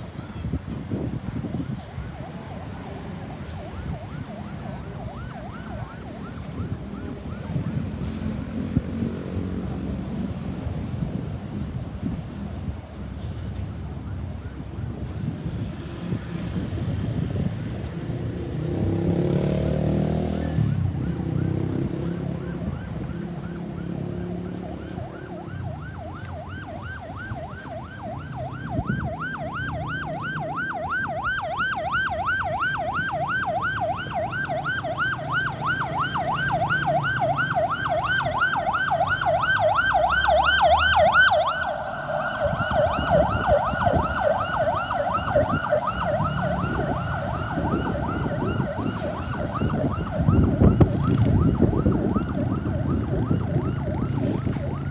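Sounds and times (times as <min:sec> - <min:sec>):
road traffic: 0:00.0 - 0:54.9
ambulance siren yelping: 0:01.4 - 0:09.2, 0:18.6 - 0:54.9
vehicle driving by: 0:15.7 - 0:54.9.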